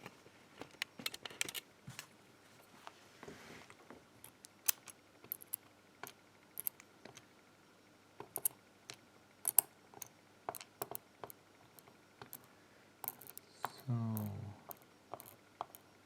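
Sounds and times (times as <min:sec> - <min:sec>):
small metal parts clicking: 0:00.6 - 0:01.6, 0:04.2 - 0:07.2, 0:08.2 - 0:15.8
soft rustle: 0:01.9 - 0:03.9.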